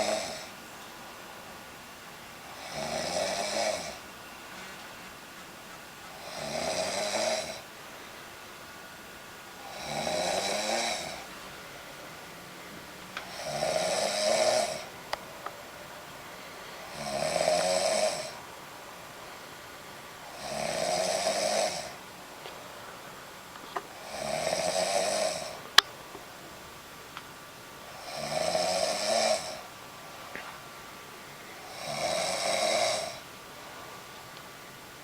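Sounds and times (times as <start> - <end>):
woman snoring loudly: 0.0 - 0.6, 2.4 - 4.0, 6.1 - 7.7, 9.6 - 11.3, 13.2 - 15.0, 16.8 - 18.4, 20.3 - 22.0, 23.9 - 25.7, 27.9 - 29.8, 31.6 - 33.3.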